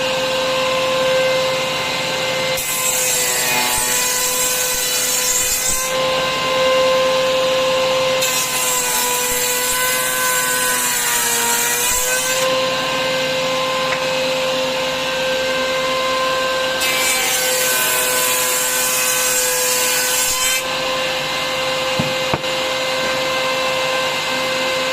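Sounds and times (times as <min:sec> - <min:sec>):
router bit cutting wood: 0:00.0 - 0:24.9
router whining: 0:05.4 - 0:24.9.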